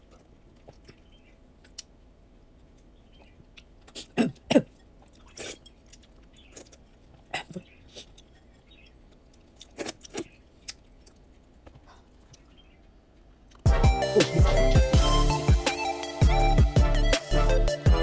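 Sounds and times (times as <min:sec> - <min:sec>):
quiet chewing: 0:00.0 - 0:02.0, 0:02.6 - 0:13.6.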